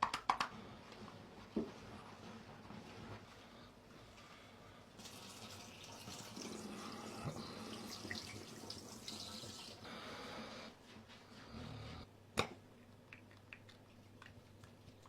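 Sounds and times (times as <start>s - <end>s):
tap water running into sink: 5.0s - 9.8s.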